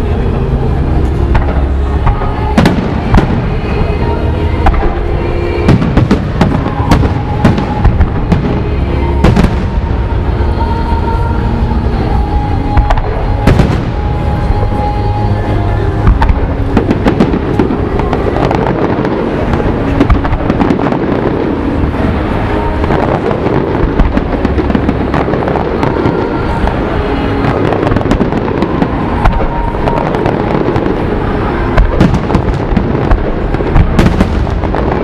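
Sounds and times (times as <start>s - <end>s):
fireworks bangs and crackles: 0.0s - 35.0s.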